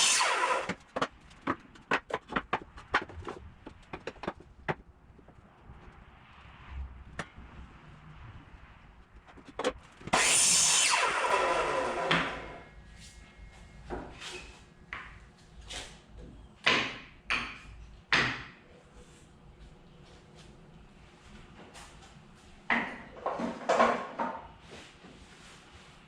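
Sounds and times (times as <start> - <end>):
power saw cutting wood: 0.0 - 1.1, 10.0 - 12.7.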